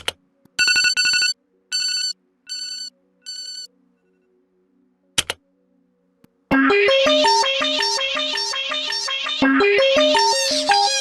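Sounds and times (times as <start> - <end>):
phone alarm plucked arpeggio: 6.5 - 11.0.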